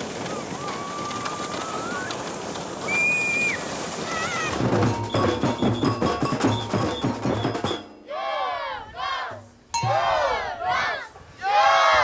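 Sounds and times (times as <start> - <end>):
steady outdoor noise: 0.0 - 12.0
drums and percussion playing: 4.6 - 8.1, 9.4 - 10.2.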